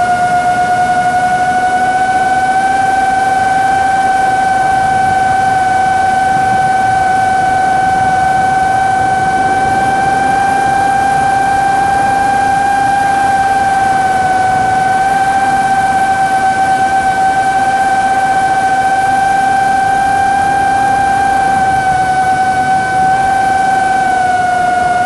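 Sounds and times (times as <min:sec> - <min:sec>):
machine drone with high whine: 0:00.0 - 0:25.0
rushing noise: 0:05.8 - 0:16.1.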